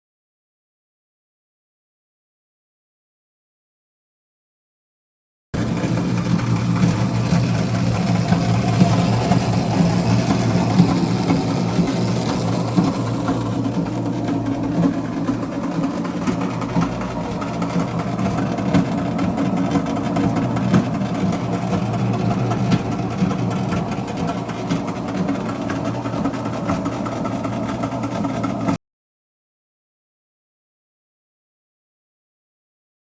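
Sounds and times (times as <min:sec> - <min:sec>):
clothes dryer mechanical hum: 0:05.6 - 0:28.8.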